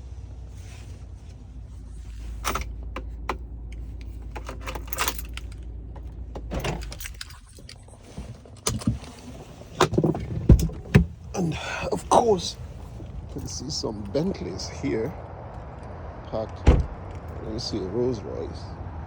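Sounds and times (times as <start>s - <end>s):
clicks and rattles: 2.4s - 11.3s
keys jangling: 4.1s - 5.7s, 6.6s - 7.9s.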